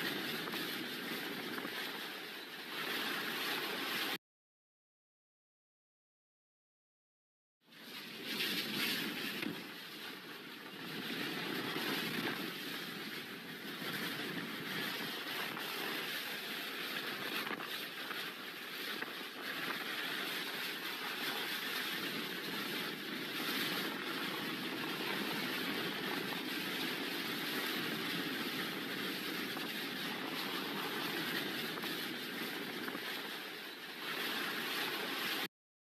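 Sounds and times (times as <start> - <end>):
hurricane-force wind blowing: 8.2 - 35.5.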